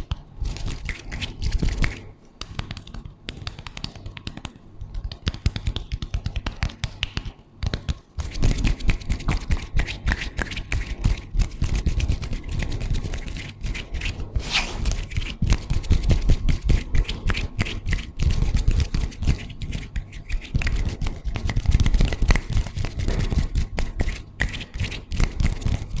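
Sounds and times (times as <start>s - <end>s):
hands rubbing microphone: 8.2s - 26.0s.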